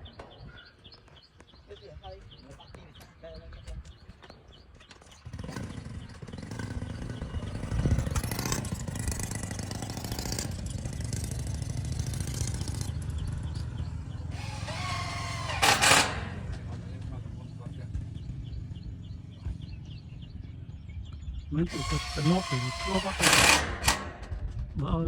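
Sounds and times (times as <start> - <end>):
small engine running: 5.1 - 21.0, 21.6 - 24.7.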